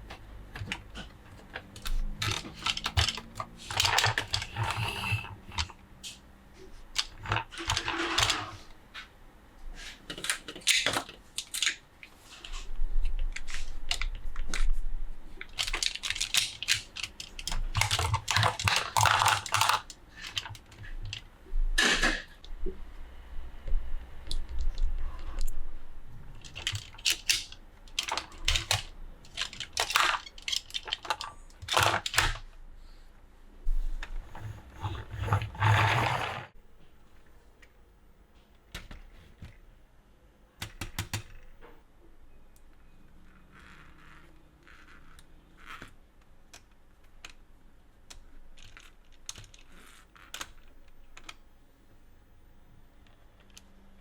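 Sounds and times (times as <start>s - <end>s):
hard plastic clicking and clattering: 0.0s - 5.8s, 15.5s - 21.2s, 26.4s - 32.4s
packaging rustling and crinkling: 15.4s - 21.2s.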